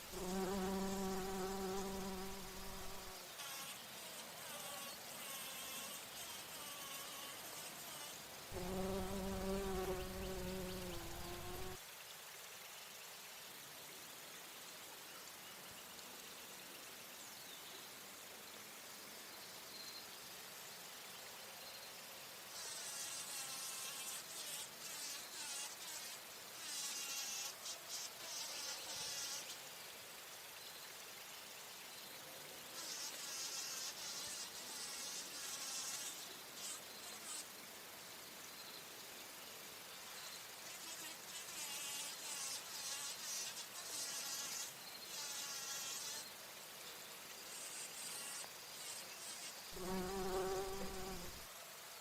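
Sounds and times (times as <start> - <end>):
faint background hiss: 0.0 - 52.0
bumblebee buzzing: 0.1 - 3.8, 4.4 - 11.8, 32.8 - 37.4, 40.8 - 46.3, 47.5 - 51.4.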